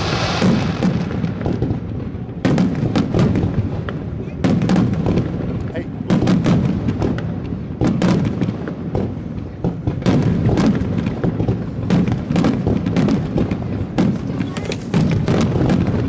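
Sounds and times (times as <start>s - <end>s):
low rumble: 0.0s - 2.1s
fireworks bangs and booms: 0.0s - 16.0s.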